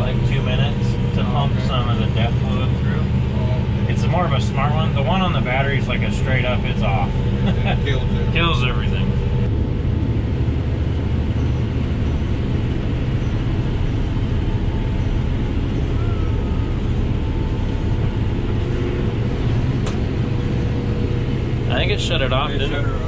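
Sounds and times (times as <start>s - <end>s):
tractor diesel engine droning: 0.0s - 23.0s.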